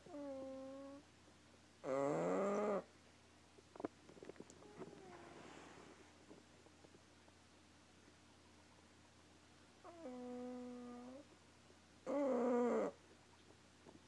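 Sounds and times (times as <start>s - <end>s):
dog snoring: 0.0s - 1.0s, 1.8s - 2.9s, 9.8s - 11.2s, 12.1s - 13.0s.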